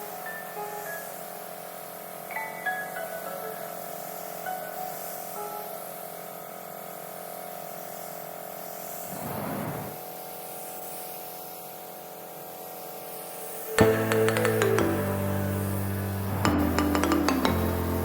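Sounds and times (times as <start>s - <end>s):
whoosh: 9.0s - 10.0s
music of sustained tones: 13.7s - 18.0s.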